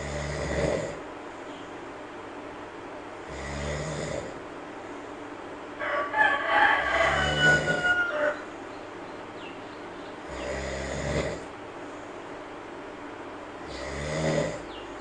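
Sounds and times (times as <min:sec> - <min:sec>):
monkey snoring: 0:00.0 - 0:01.1, 0:03.2 - 0:04.4, 0:07.3 - 0:07.8, 0:10.2 - 0:11.5, 0:13.6 - 0:14.8
long multi-pitched animal call: 0:05.9 - 0:08.5.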